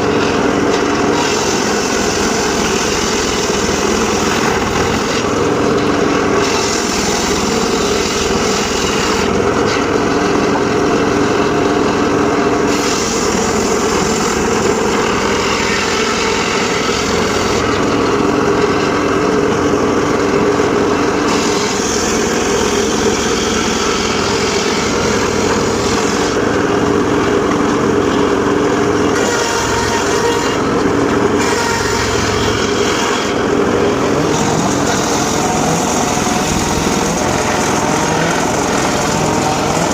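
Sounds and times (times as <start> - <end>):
circular saw drive drone: 0.0 - 39.9
saw blade hissing through wood: 1.0 - 5.6, 6.3 - 9.4, 12.6 - 18.0, 21.2 - 26.5, 31.3 - 39.9.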